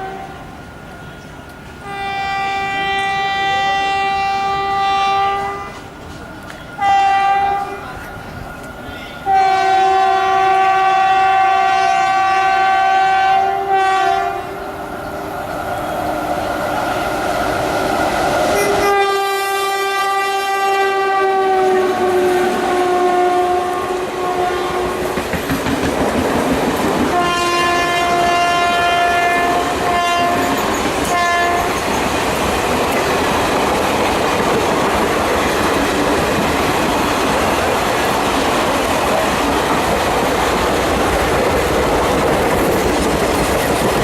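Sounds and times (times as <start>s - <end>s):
locomotive air horn: 0.0s - 0.4s, 1.8s - 5.9s, 6.8s - 7.8s, 9.2s - 14.6s, 18.5s - 25.2s, 27.1s - 31.8s
train coaches rolling: 0.0s - 44.0s
wheels clacking over rail joints: 24.8s - 27.3s, 29.5s - 44.0s.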